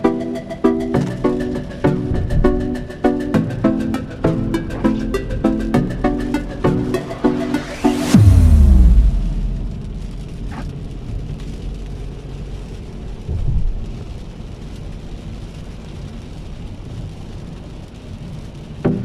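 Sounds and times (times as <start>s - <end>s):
heavy rain: 0.0s - 19.0s
low traffic rumble: 6.8s - 15.0s.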